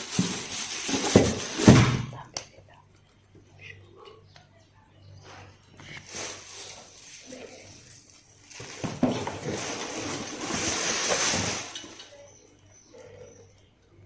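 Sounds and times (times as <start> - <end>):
packaging rustling and crinkling: 0.0 - 2.1, 5.8 - 12.1.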